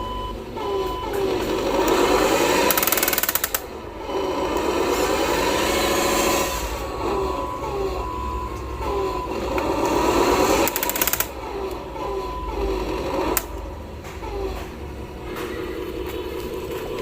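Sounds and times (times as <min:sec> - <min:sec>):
small electric motors whining: 0:00.0 - 0:14.7
clicks: 0:10.6 - 0:17.0.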